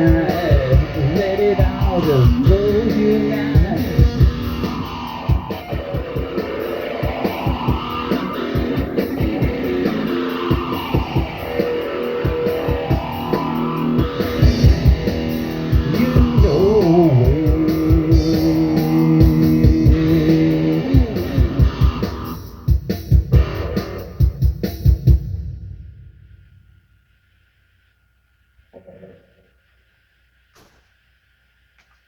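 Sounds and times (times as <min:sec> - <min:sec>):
electric guitar long notes: 0:00.0 - 0:24.5
bass guitar: 0:00.0 - 0:25.7
drum hits: 0:00.0 - 0:26.1.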